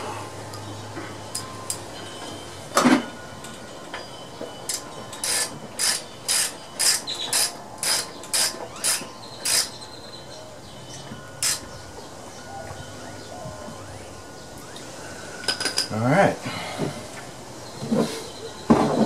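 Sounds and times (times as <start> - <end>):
socket ratchet clicking: 5.2 - 9.7, 11.4 - 11.6.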